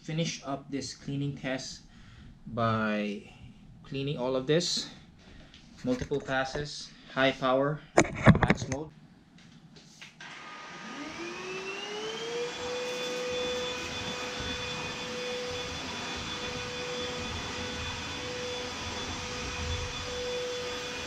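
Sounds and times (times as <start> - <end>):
vacuum motor whine: 10.2 - 21.0
vacuum airflow hiss: 10.5 - 21.0.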